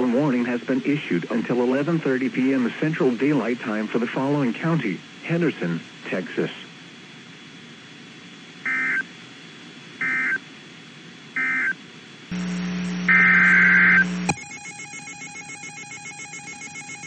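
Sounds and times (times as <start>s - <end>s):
electronic buzz with tone: 8.6s - 9.1s, 10.0s - 10.4s, 11.4s - 17.0s
digital data bursts: 11.4s - 17.0s
pulsing electronic signal: 11.4s - 17.0s.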